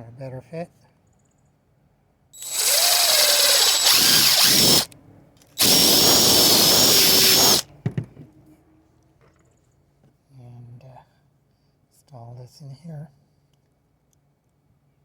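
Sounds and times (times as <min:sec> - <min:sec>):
power drill spinning: 0:02.4 - 0:04.9, 0:05.6 - 0:07.7.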